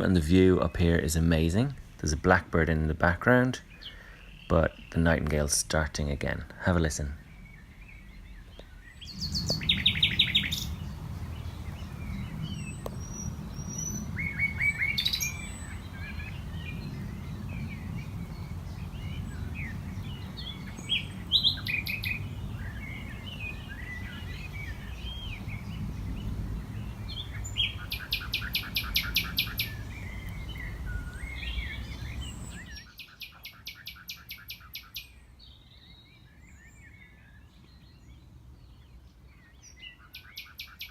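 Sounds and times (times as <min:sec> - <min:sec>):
blackbird singing: 0:00.0 - 0:40.9
nightingale singing: 0:00.0 - 0:40.9.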